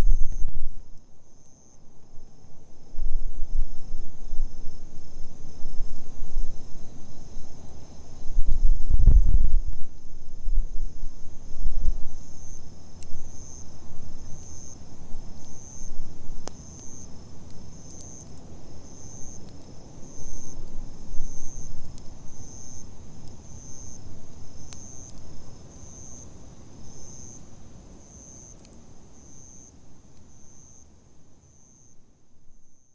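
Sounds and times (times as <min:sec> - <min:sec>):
low fire rumble: 0:00.0 - 0:30.4
cricket chirping: 0:00.0 - 0:32.9
campfire crackling and popping: 0:08.4 - 0:29.4.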